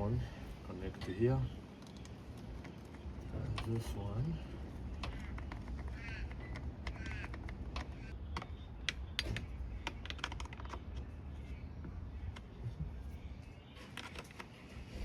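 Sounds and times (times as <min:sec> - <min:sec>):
plastic parts clicking: 0:04.8 - 0:11.1.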